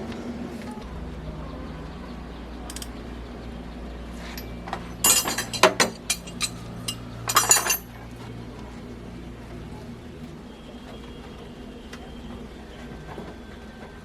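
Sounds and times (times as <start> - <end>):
steady low hum: 0.0 - 10.5
metallic clinks and rattles: 2.7 - 3.0, 4.2 - 8.0.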